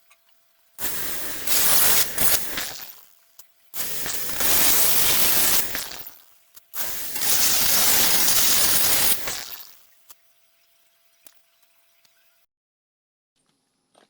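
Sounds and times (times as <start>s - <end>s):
electric power tool bursts: 0.8s - 3.1s, 3.8s - 6.2s, 6.8s - 9.8s.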